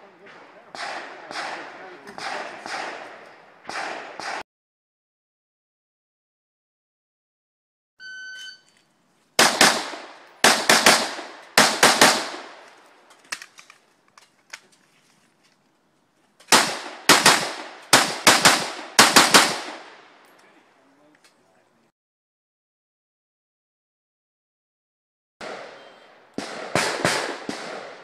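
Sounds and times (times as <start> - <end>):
rifle shots: 0.2 - 4.4, 9.4 - 12.8, 16.5 - 20.2, 25.4 - 28.0
shot timer beep: 8.0 - 8.7.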